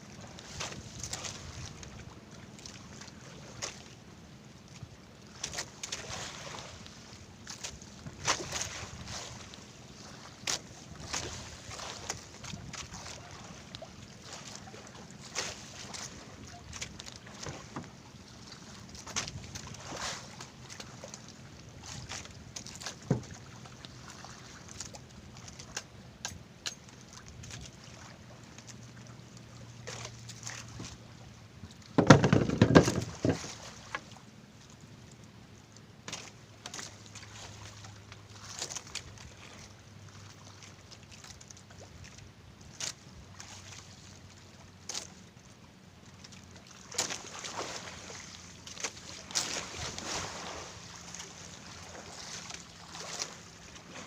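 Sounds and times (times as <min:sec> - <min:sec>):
water sloshing against hull: 0:00.0 - 0:54.0
knocks and clicks: 0:32.0 - 0:33.4.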